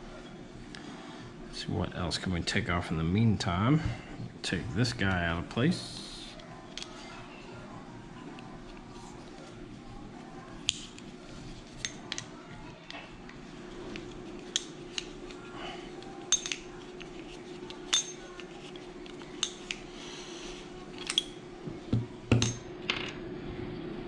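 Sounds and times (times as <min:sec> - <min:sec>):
steady low hum: 0:00.0 - 0:24.0
small metal parts clinking: 0:16.3 - 0:17.1.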